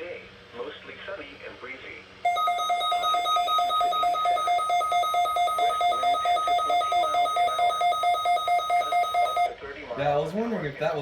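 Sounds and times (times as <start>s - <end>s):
rapid pulsed electronic beeping: 2.3s - 9.5s.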